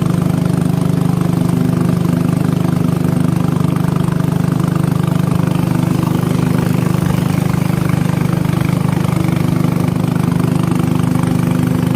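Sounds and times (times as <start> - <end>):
boat engine throbbing: 0.0 - 11.9.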